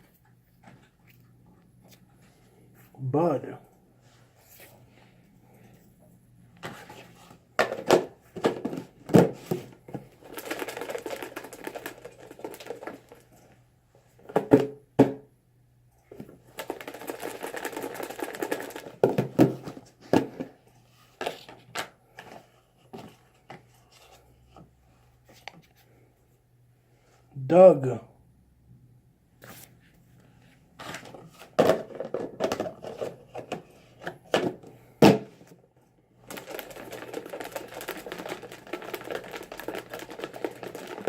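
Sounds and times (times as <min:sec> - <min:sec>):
paper slips crinkling: 0:36.3 - 0:41.0.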